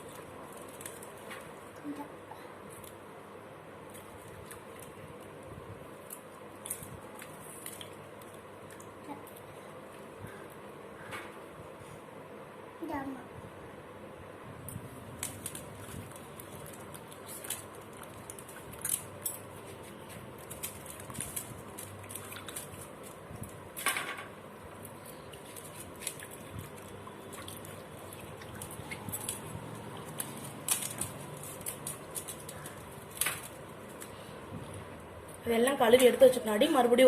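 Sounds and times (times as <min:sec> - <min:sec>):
vegetables splashing in water: 0:24.8 - 0:34.0.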